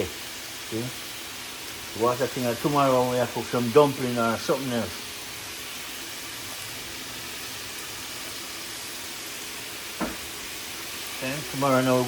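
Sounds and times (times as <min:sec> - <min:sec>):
chicken frying in hot oil: 0:00.0 - 0:12.0.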